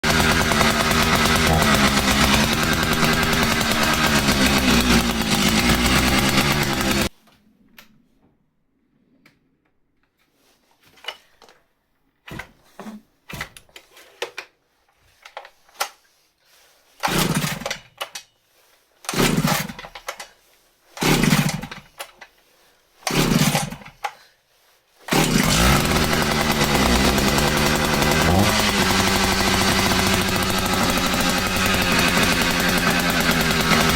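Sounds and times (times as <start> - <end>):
chainsaw engine running: 0.0 - 7.1, 25.1 - 33.9.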